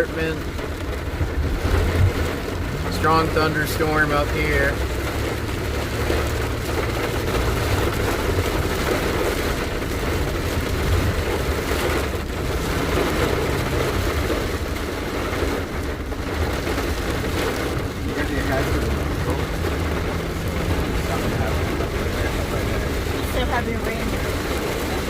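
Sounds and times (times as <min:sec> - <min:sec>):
rain on car roof: 0:00.0 - 0:25.0
vehicle rumble: 0:00.0 - 0:25.0.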